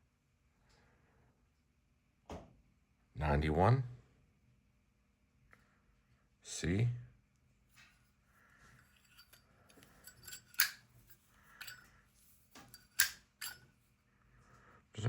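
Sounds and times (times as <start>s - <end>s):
lighter lid metallic ticks: 12.9s - 13.6s.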